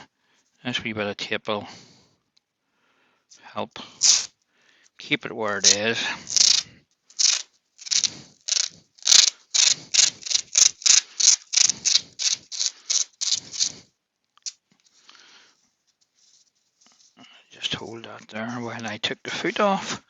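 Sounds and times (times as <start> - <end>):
tape pulled off roll: 4.0 - 4.3, 5.6 - 6.6, 7.2 - 13.8
faint handling: 5.4 - 13.8, 14.4 - 19.8.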